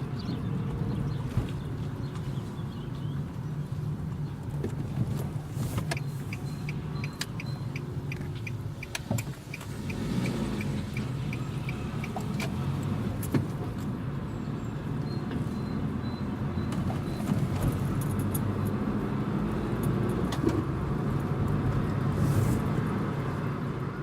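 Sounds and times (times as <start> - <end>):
car engine and road hum: 0.0 - 24.0
turn signal ticking: 5.6 - 14.0.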